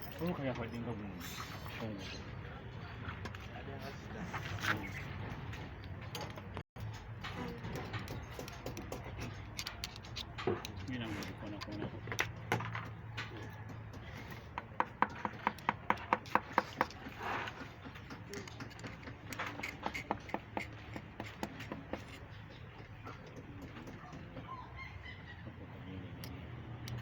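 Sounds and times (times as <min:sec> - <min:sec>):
scattered knocks: 0:12.0 - 0:24.5.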